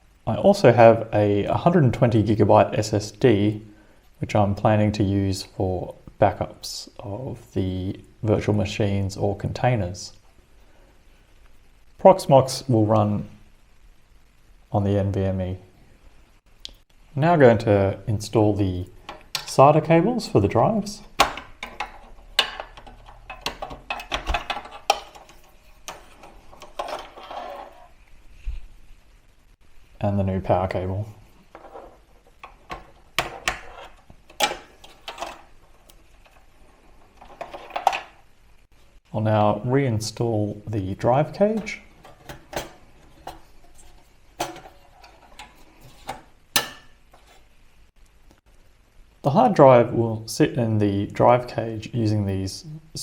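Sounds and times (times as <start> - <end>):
light clicks and metallic knocks: 21.2 - 27.2.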